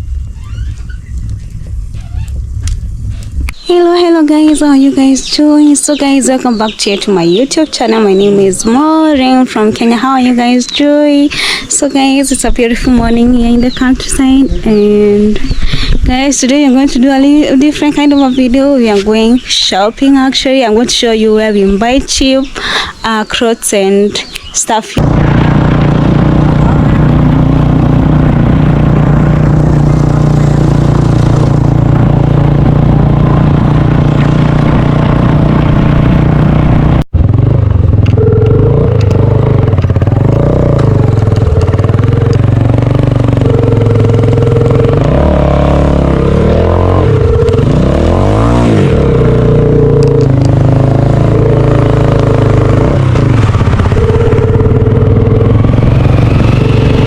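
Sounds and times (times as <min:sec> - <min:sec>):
vehicle engine running and revving: 0:00.0 - 0:03.6, 0:25.0 - 0:57.0.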